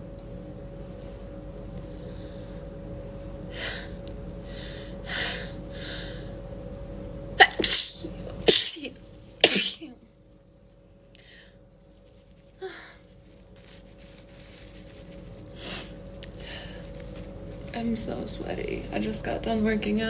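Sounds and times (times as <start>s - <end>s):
person sneezing: 7.4s - 9.9s.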